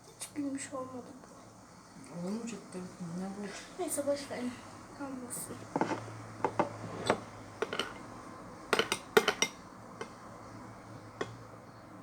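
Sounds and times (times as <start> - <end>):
objects clinking against a bowl: 7.6 - 8.1, 8.7 - 10.2.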